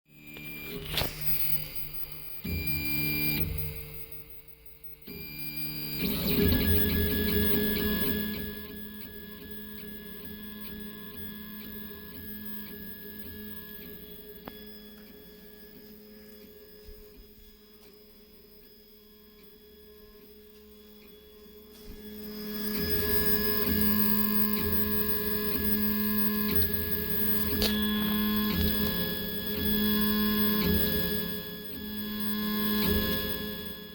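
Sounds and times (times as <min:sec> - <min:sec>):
stepper motors whining: 0:22.0 - 0:33.0.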